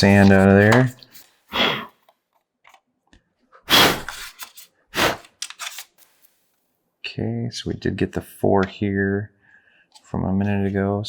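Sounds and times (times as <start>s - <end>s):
plastic scraping rustles: 0.0s - 1.4s.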